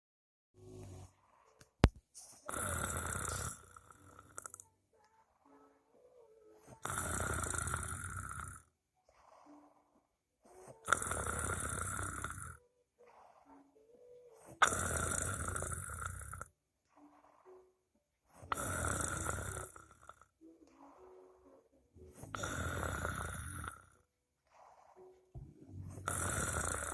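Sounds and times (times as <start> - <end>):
faint breaths: 0.8 - 26.9
person snoring: 2.4 - 4.7, 6.6 - 17.7, 18.3 - 25.2, 25.8 - 26.9.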